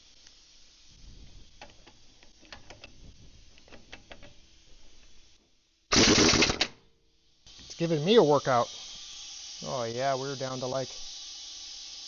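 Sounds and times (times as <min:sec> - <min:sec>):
pneumatic impact wrench hammering: 0:05.9 - 0:06.8.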